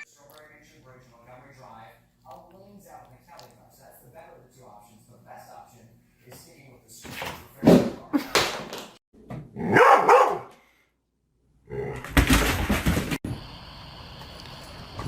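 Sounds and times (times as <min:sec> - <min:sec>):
dog barking: 0:09.6 - 0:10.5.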